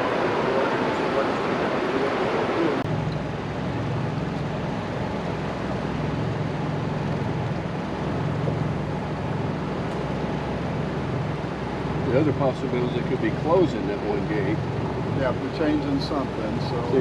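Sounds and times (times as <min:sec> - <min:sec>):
low engine-like hum: 0:00.0 - 0:17.0.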